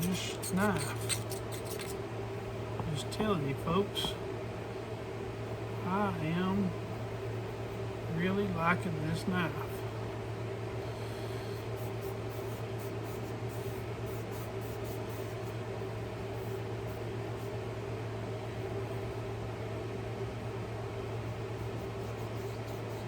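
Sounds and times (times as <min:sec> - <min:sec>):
faint light scratching: 0:00.0 - 0:02.0
low machine hum: 0:00.0 - 0:23.0.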